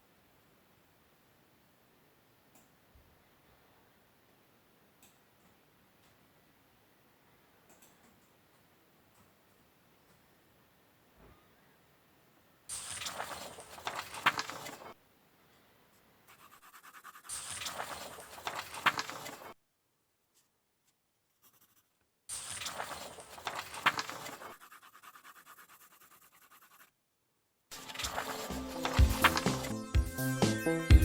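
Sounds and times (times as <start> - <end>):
drawing tool scratching on paper: 16.3 - 18.5, 21.3 - 27.0
music: 27.8 - 31.0.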